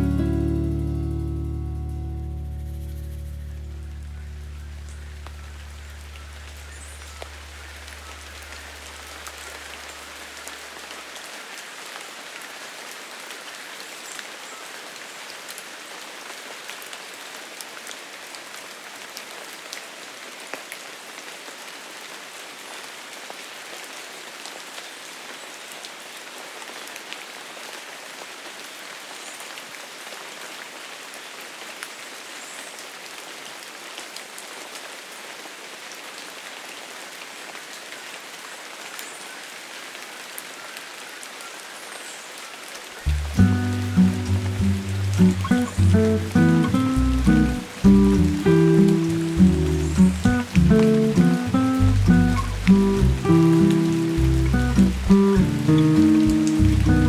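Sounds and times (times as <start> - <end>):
low bass music: 0.0 - 6.6, 43.1 - 57.0
rain pattering on leaves: 0.0 - 57.0
raindrops ticking: 2.8 - 10.7, 43.1 - 57.0.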